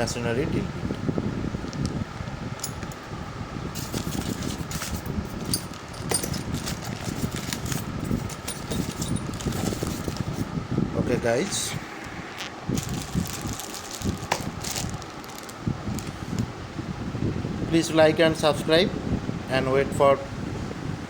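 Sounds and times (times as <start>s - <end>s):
steady background noise: 0.0s - 21.0s
metal drill bits clinking: 3.8s - 10.2s.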